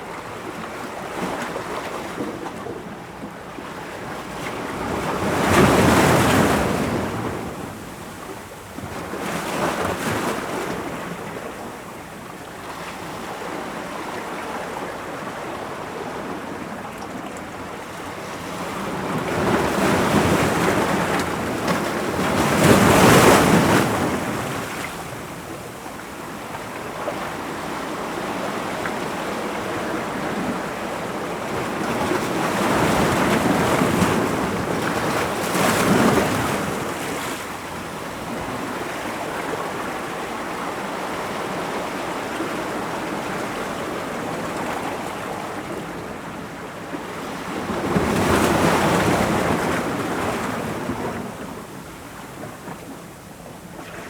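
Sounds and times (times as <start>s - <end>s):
ocean waves breaking on rocks: 18.4s - 46.3s, 46.9s - 51.8s.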